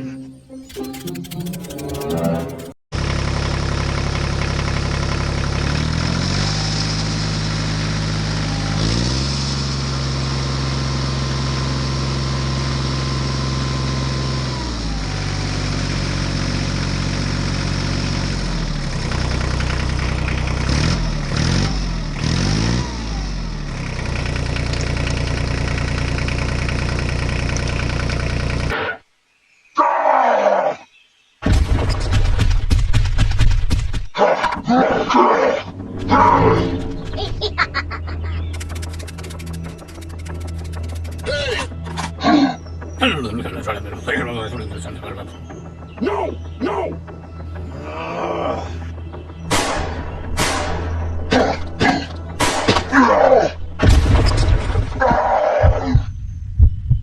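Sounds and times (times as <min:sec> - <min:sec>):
tractor engine running: 0:00.6 - 0:28.8, 0:35.7 - 0:42.0
brief falling sound: 0:35.7 - 0:38.8.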